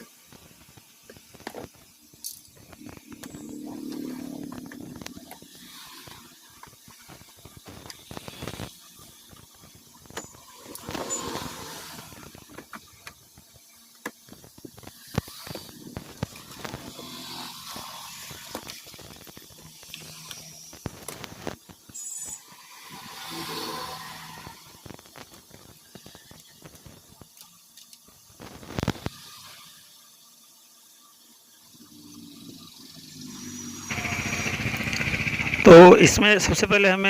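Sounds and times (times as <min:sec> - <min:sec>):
hand tools clicking and scraping: 0:01.0 - 0:13.2.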